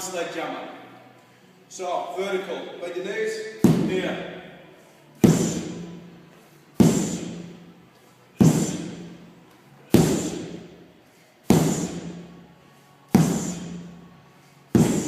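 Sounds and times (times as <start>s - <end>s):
sledgehammer heavy blows: 5.2s - 5.8s, 6.8s - 7.5s, 8.4s - 9.1s, 9.9s - 10.6s, 11.5s - 12.2s, 13.1s - 13.9s, 14.7s - 15.0s.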